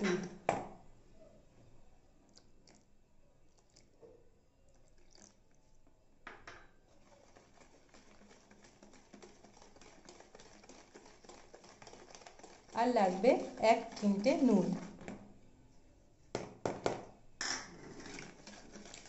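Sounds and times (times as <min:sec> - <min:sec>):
stirring batter in a bowl: 0:02.2 - 0:06.0, 0:06.6 - 0:15.5, 0:16.4 - 0:19.0.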